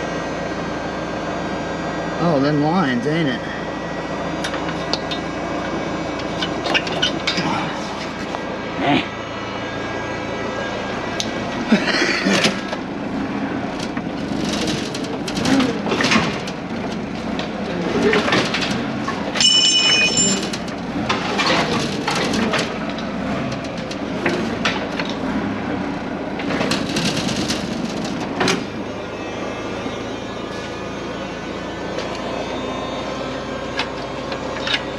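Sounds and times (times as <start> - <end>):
forklift engine running: 0.0 - 34.9
metallic clanks and knocks: 18.1 - 22.8
ringing metal clang: 19.4 - 20.6.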